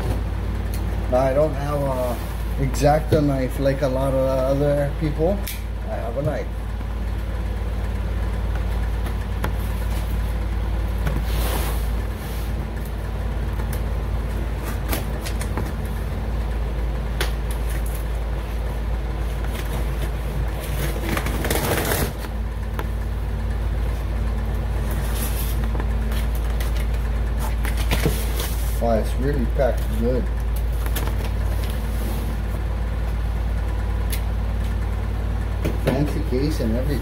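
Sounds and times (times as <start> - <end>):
scraping rips: 20.6 - 22.3
knife cutting packing tape: 20.7 - 22.3.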